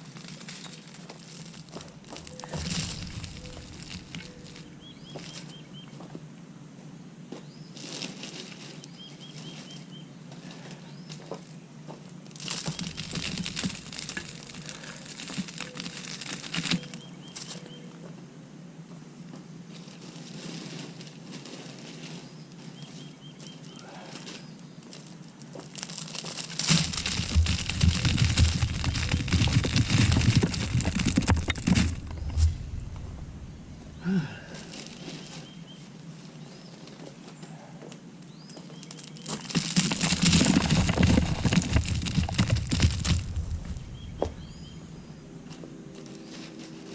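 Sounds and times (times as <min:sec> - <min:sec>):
mulch rustling and crinkling: 0:00.0 - 0:05.8, 0:12.1 - 0:17.8, 0:19.7 - 0:37.4, 0:38.3 - 0:46.9
thumping: 0:01.7 - 0:05.3, 0:26.5 - 0:35.0, 0:39.3 - 0:45.2
faint bird chirps: 0:22.2 - 0:24.8.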